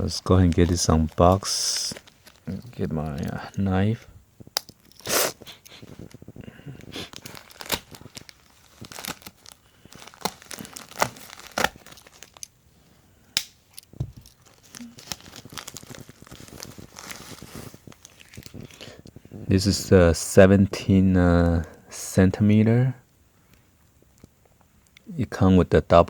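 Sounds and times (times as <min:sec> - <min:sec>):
packaging tearing and crinkling: 0:00.2 - 0:03.5, 0:04.6 - 0:12.5, 0:13.8 - 0:18.9
knife cutting package: 0:06.8 - 0:12.4.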